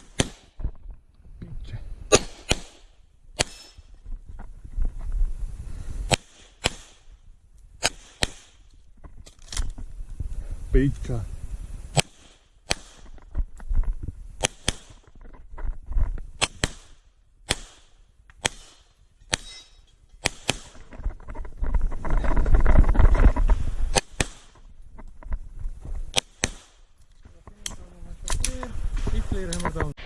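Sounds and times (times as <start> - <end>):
pistol shots: 0.0 - 0.5, 2.1 - 3.8, 6.1 - 7.1, 7.8 - 8.6, 11.9 - 13.1, 14.4 - 15.1, 16.4 - 19.6, 20.2 - 20.8, 23.9 - 24.6, 26.1 - 26.9
rumbling noise: 20.5 - 26.2.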